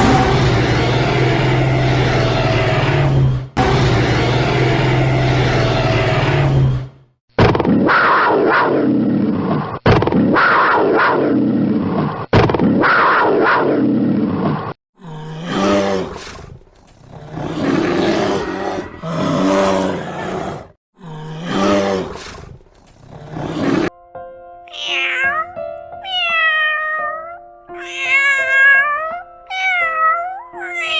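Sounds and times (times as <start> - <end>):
big cat roaring: 15.0 - 23.9.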